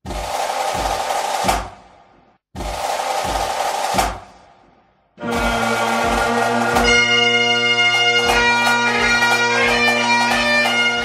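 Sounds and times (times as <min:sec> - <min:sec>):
bagpipe tune over drones: 0:05.2 - 0:11.0.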